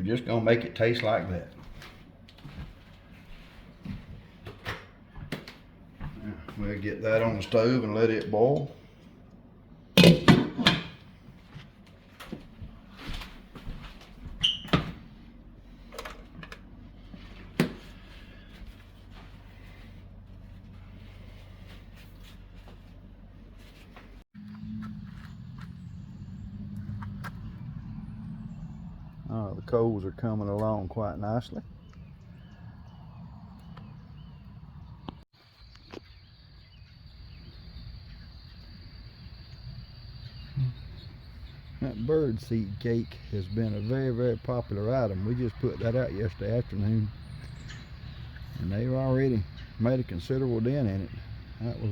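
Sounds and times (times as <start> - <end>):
low rumble: 18.0 - 30.4
small bird chirping: 31.8 - 42.1
high insect drone: 35.9 - 51.9.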